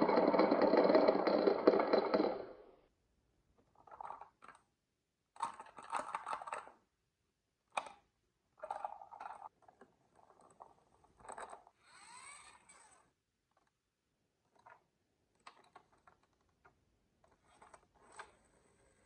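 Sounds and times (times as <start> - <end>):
marbles clattering on marble run: 0.0 - 2.6.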